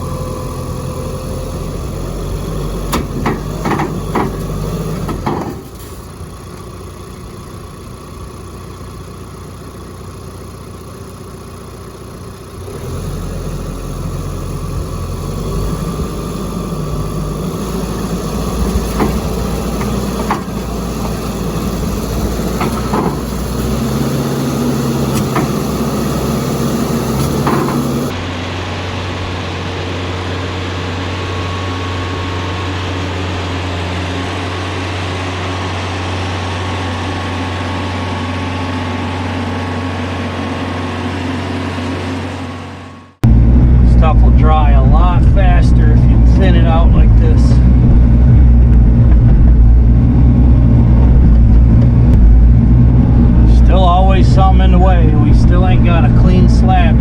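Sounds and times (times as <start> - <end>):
diesel engine under load: 0.0 - 57.0
metal clanks and knocks: 2.9 - 6.1, 18.4 - 24.2, 24.9 - 26.3, 27.1 - 28.1.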